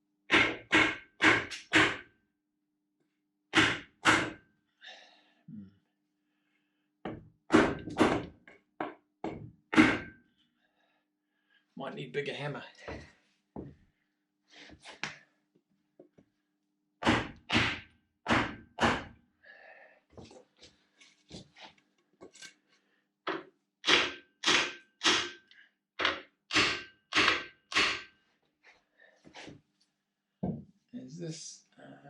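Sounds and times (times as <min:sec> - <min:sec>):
hammer knocking on wooden block: 0:00.3 - 0:02.0, 0:03.6 - 0:04.4, 0:07.0 - 0:10.1, 0:26.0 - 0:28.1, 0:30.4 - 0:30.6.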